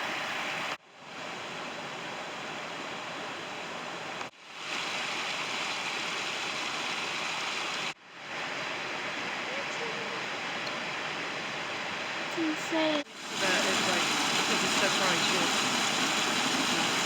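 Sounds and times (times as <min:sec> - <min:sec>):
running water rushing: 0:00.0 - 0:17.0.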